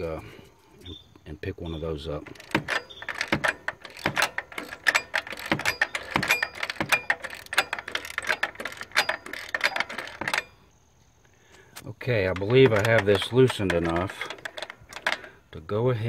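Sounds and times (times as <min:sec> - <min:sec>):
socket ratchet clicking: 0:02.2 - 0:10.6, 0:12.2 - 0:15.4.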